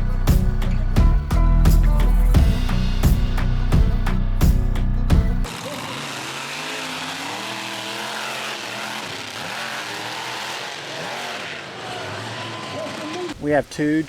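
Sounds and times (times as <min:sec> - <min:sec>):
large engine revving: 0:05.3 - 0:13.4.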